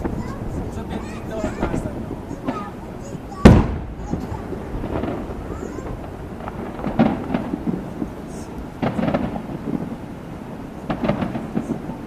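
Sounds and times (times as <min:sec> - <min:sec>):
fireworks booming with echoes: 0:00.0 - 0:12.0.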